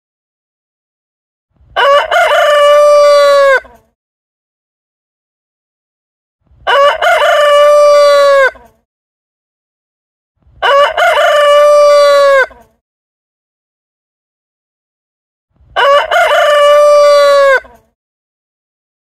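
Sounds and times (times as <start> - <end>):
rooster crowing: 1.8 - 3.7, 6.6 - 8.7, 10.6 - 12.7, 15.8 - 17.8.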